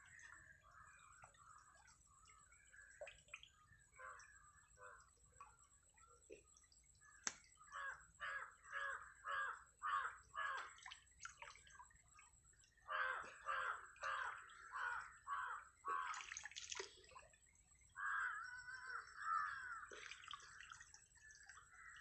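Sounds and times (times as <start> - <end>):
faint trickle of water: 0.0 - 22.0
crow cawing: 7.7 - 10.8, 12.9 - 16.3, 18.0 - 20.5.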